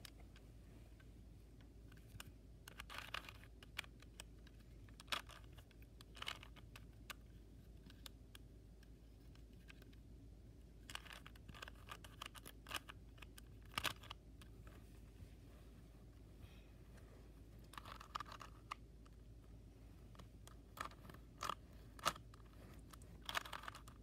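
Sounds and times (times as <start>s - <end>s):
puzzle cube clicking as turned: 1.9s - 8.5s, 10.8s - 14.5s, 17.7s - 19.2s, 20.1s - 24.0s.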